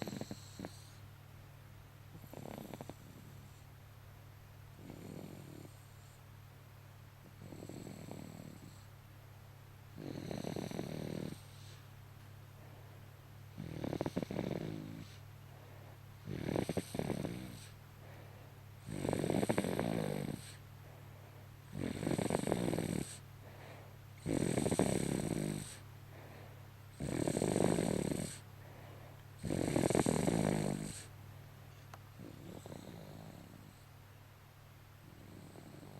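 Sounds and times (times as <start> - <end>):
baby snoring: 0.0 - 1.0, 2.2 - 3.6, 4.8 - 6.1, 7.3 - 8.9, 10.0 - 11.8, 13.5 - 15.2, 16.2 - 17.8, 18.8 - 20.6, 21.7 - 23.3, 24.2 - 25.8, 27.0 - 28.5, 29.4 - 31.1, 32.2 - 33.9, 35.0 - 35.9
steady low hum: 0.0 - 35.9.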